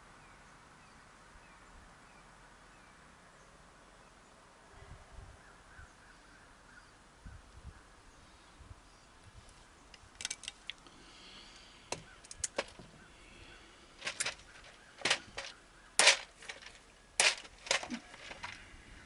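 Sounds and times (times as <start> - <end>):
hand tools clicking and snapping: 10.2 - 10.8, 11.9 - 12.8, 14.0 - 18.6.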